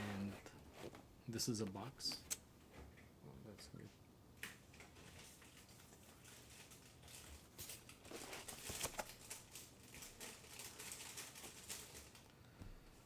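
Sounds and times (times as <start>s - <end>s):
packaging rustling and crinkling: 4.8s - 12.2s.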